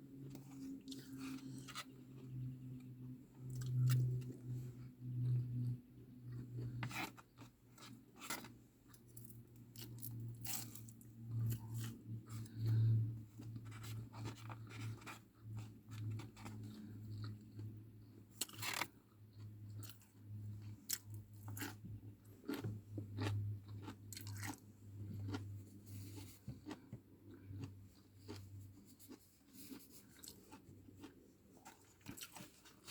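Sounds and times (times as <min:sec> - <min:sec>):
steady low hum: 0:00.0 - 0:18.5
chewing and crunching food: 0:00.0 - 0:32.9.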